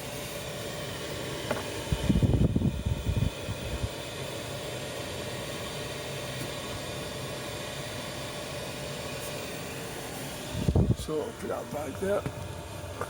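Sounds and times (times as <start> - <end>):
heater fan humming: 0.0 - 13.0
loud irregular low rumbling: 1.9 - 4.0, 10.4 - 13.0.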